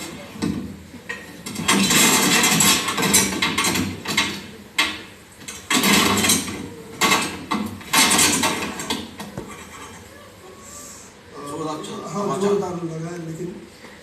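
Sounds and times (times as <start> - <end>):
loud hits with clatter: 1.5 - 5.0.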